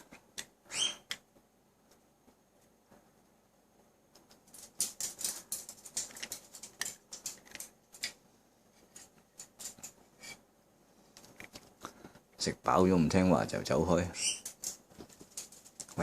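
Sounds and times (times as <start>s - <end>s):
parrot crunching food: 4.1s - 8.2s, 14.4s - 16.0s.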